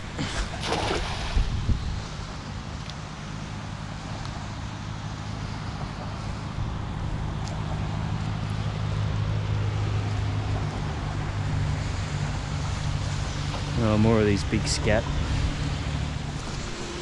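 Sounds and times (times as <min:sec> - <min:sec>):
wind noise: 0:00.0 - 0:02.4
low engine hum: 0:00.0 - 0:17.0.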